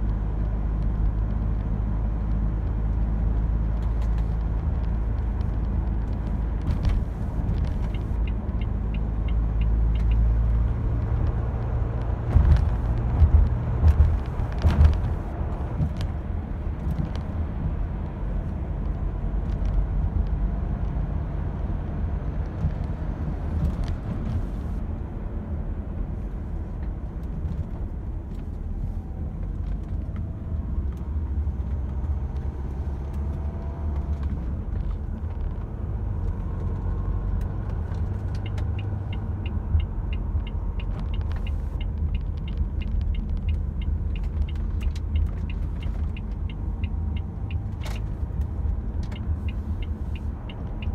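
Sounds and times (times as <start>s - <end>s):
car engine rumble: 0.0s - 50.9s
light regular ticking: 7.6s - 13.0s, 37.4s - 50.9s.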